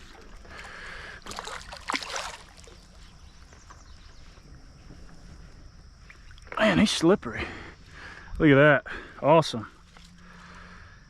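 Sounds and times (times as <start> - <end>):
water splashing with clicks: 0.0 - 3.0, 6.0 - 6.7
creek water flowing: 0.0 - 11.0.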